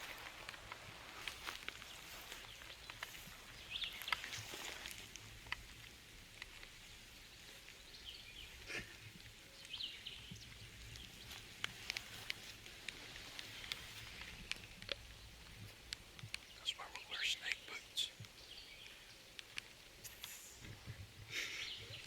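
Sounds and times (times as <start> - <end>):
light ticks: 0.0 - 6.8, 9.0 - 21.0.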